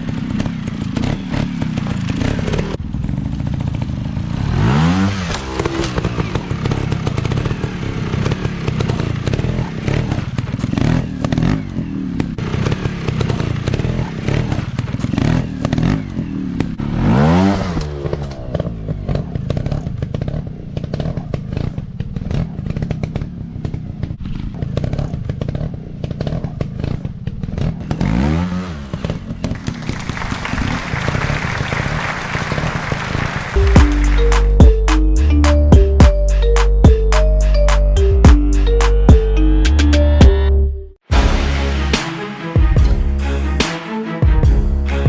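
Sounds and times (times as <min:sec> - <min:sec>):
dirt bike engine revving: 0:00.0 - 0:45.0
music: 0:33.6 - 0:45.0.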